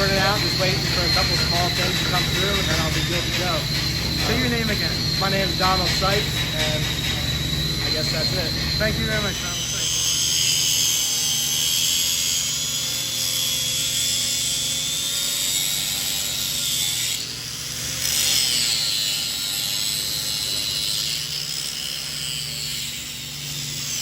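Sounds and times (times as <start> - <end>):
steady machine hum: 0.0 - 18.2
high-pitched power tool whine: 0.0 - 24.0.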